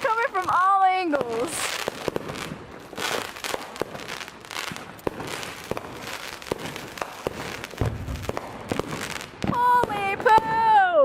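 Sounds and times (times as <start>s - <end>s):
fireworks popping and banging: 0.0s - 10.8s
fireworks crackling: 0.0s - 11.0s.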